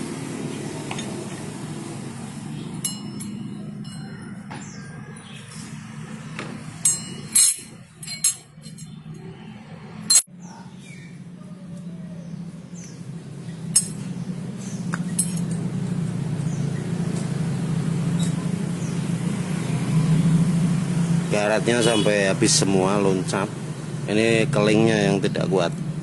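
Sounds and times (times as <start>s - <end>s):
steady low hum: 0.0s - 21.4s
metal parts and tools clinking: 2.8s - 4.4s, 6.8s - 9.4s, 10.0s - 10.3s, 13.7s - 14.1s, 15.0s - 15.7s.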